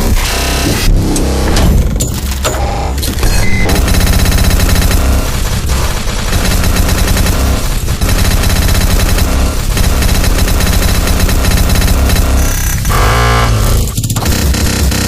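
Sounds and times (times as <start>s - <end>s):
harsh electronic buzzing: 3.2s - 14.0s.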